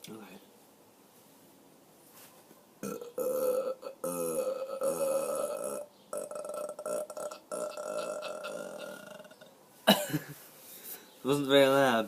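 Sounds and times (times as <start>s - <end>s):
long drawn-out burp: 2.8s - 9.5s.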